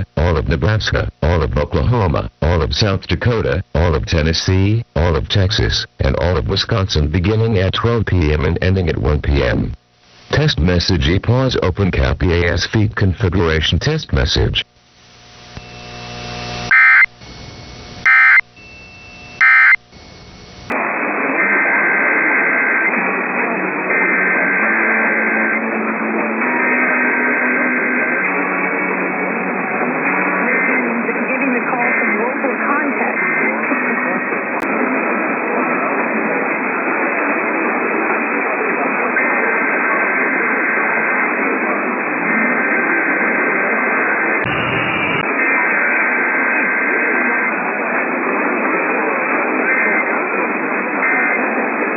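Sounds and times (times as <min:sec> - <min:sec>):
muffled radio broadcast: 0:00.0 - 0:17.1, 0:18.0 - 0:18.4, 0:19.4 - 0:19.8, 0:27.8 - 0:43.5
radio hiss: 0:00.0 - 0:18.5, 0:19.2 - 0:51.9
faint steady whines: 0:00.0 - 0:20.8
faint steady tones: 0:14.6 - 0:20.7
digital data tone bursts: 0:16.7 - 0:17.1, 0:18.0 - 0:19.8.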